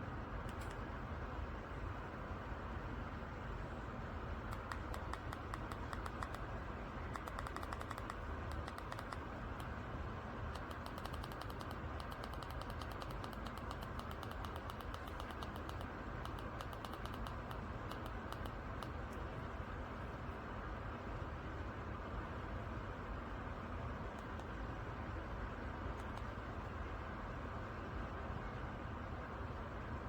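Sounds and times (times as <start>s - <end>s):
rapid irregular clicking: 4.5s - 9.8s, 10.5s - 19.2s.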